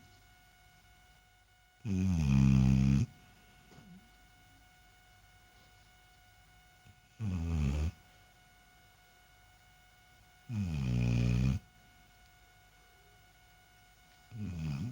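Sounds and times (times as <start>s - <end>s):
loud rattly snoring: 1.8s - 3.1s, 7.2s - 8.0s, 10.5s - 11.6s, 14.4s - 14.9s.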